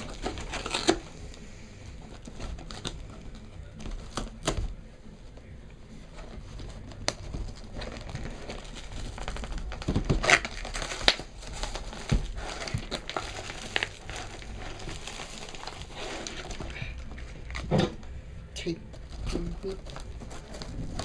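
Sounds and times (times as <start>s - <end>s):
packaging crinkling: 0.0s - 1.4s, 6.2s - 18.1s, 18.9s - 21.0s.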